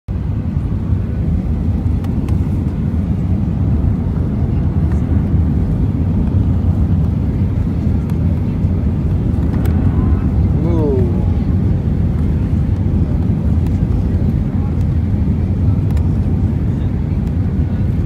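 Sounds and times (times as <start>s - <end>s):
airplane cabin rumble: 0.1s - 18.0s.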